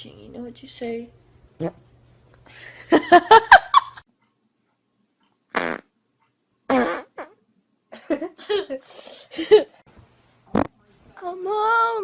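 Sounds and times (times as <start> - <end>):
farts: 5.5 - 5.9, 6.7 - 7.4, 10.5 - 10.7.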